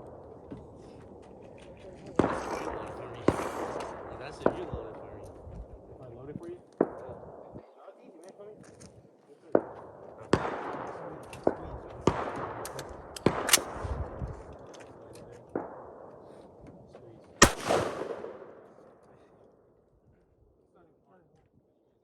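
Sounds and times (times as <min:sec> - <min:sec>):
gunshots with echo: 0:02.2 - 0:05.2, 0:09.5 - 0:14.4, 0:15.4 - 0:16.5, 0:17.4 - 0:19.0.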